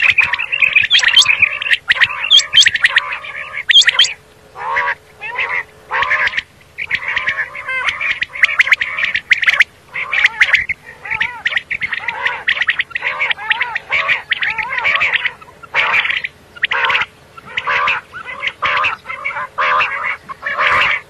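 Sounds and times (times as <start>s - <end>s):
quail calling: 0.0s - 21.0s.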